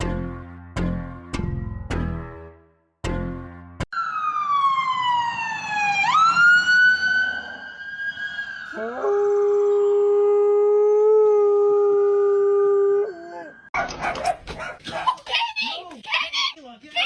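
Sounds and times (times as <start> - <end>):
siren wailing: 3.9 - 11.1
dog howling: 8.7 - 13.7.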